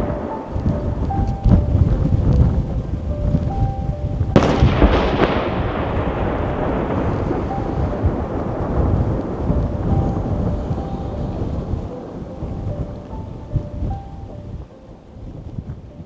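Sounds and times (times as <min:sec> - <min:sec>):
continuous low booming: 0:00.0 - 0:14.7
firework shells bursting: 0:04.3 - 0:13.2.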